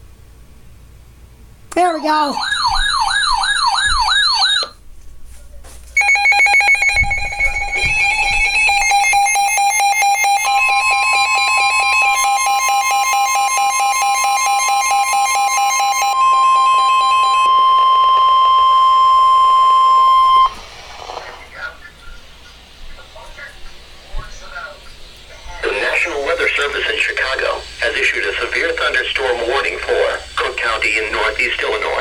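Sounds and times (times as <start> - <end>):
steady alarm tone: 1.8 - 4.8, 6.0 - 21.2, 25.3 - 32.0
wavering siren: 2.1 - 4.8, 6.0 - 20.7
rapid electronic beeping: 6.0 - 20.5.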